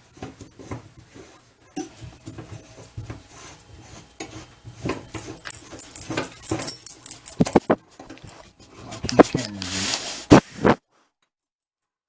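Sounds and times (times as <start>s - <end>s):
scuffling and knocking: 4.9s - 10.8s.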